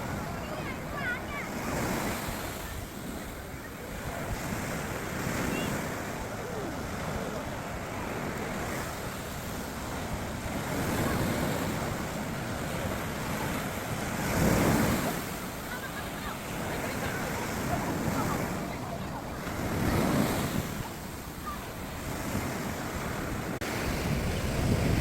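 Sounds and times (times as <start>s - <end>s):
sea surf breaking on beach: 0.0s - 25.0s
wind buffeting microphone: 16.4s - 25.0s.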